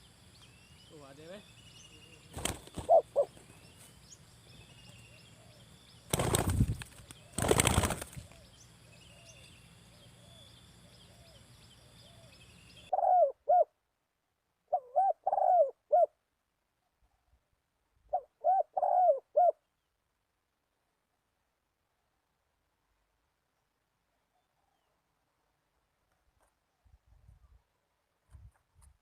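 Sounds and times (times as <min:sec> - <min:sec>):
dove cooing: 0:02.1 - 0:03.6, 0:05.1 - 0:06.4, 0:10.0 - 0:13.7, 0:14.7 - 0:16.2, 0:18.1 - 0:19.6.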